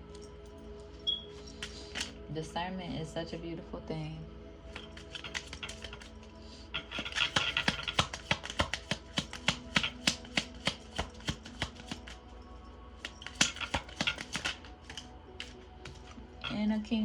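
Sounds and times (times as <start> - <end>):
cards being shuffled: 1.6 - 2.2, 4.8 - 6.2, 6.8 - 12.2, 13.0 - 16.2.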